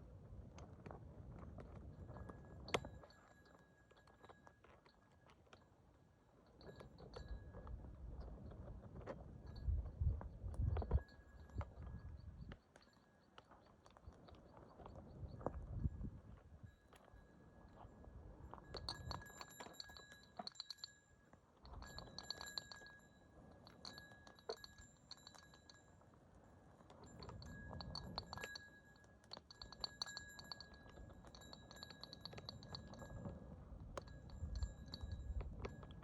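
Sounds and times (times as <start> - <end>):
faint high ringing: 2.0 - 8.0, 15.4 - 36.0.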